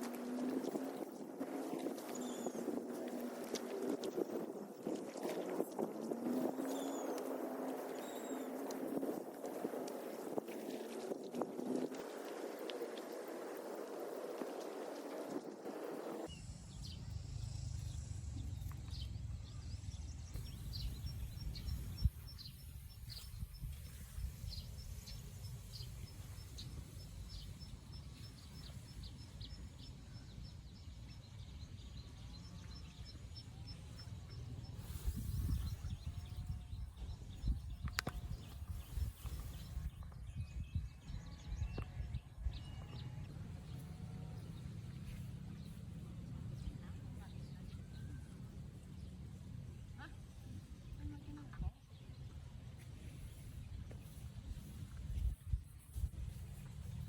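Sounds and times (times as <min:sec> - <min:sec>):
faint chirps and clicks: 0:37.4 - 0:40.2.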